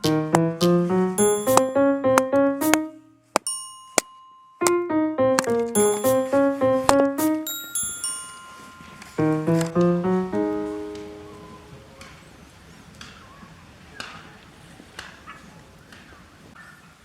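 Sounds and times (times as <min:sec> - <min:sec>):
piano music: 0:00.0 - 0:03.6, 0:04.6 - 0:11.8.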